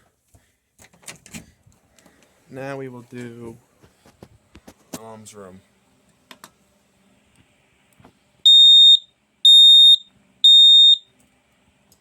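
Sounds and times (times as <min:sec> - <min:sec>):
smoke alarm beeps: 0:08.4 - 0:11.1.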